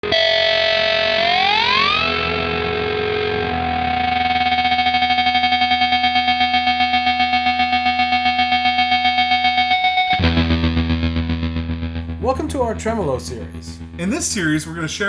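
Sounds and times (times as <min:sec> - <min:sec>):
distorted electric guitar tremolo: 0:00.0 - 0:15.0.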